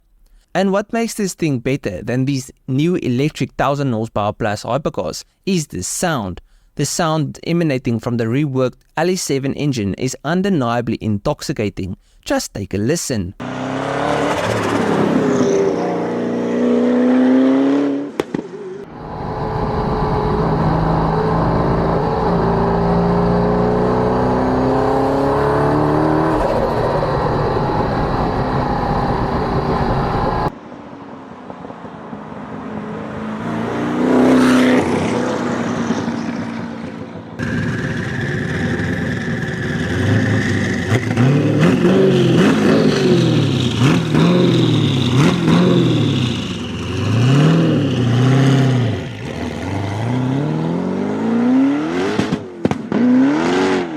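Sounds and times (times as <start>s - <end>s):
car engine revving: 13.4s - 30.5s, 32.3s - 53.9s
engine throttle blips: 35.8s - 53.0s.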